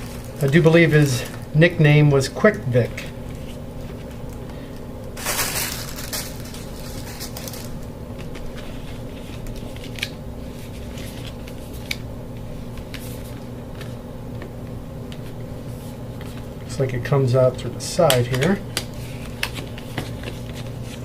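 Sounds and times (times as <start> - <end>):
cardboard and paper rustling: 0.0 - 1.5, 5.2 - 12.0, 18.2 - 21.0
steady low hum: 0.0 - 21.0.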